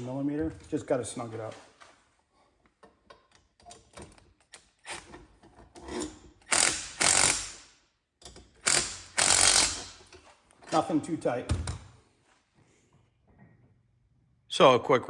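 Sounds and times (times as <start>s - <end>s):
wrench ratchet clicking: 6.4s - 7.7s, 8.3s - 10.1s.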